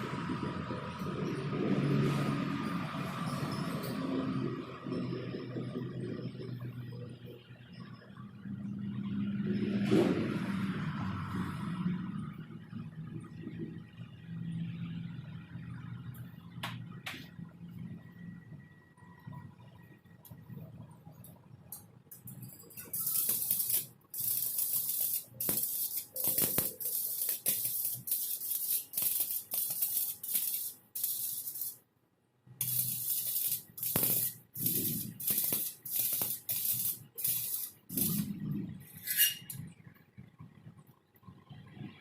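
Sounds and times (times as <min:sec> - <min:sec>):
arc welding crackling hiss: 0:22.2 - 0:31.8, 0:32.6 - 0:38.4.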